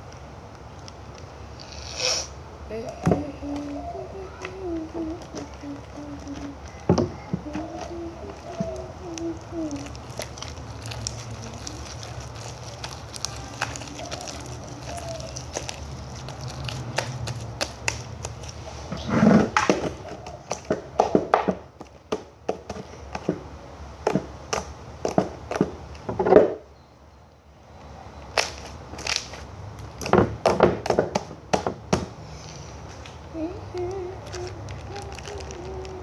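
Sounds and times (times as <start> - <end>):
slime squelching and popping: 5.2 - 18.6, 28.3 - 31.3.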